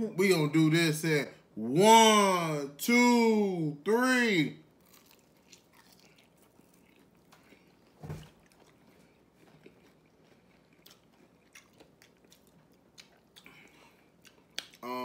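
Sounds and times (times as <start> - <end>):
chewing chicken wings: 4.8 - 14.9.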